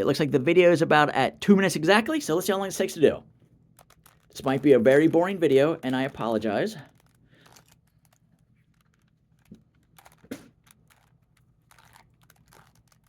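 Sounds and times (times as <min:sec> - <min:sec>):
plastic puzzle cube clicking: 0:03.8 - 0:04.7, 0:06.9 - 0:13.0.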